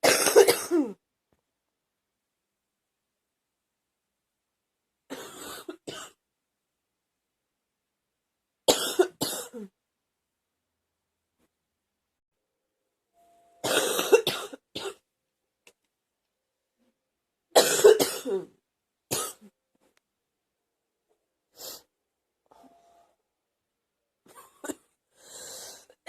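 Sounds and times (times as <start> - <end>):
girl coughing: 0.0 - 1.0, 5.1 - 6.2, 8.7 - 9.7, 13.6 - 15.0, 17.6 - 18.5, 19.1 - 19.5.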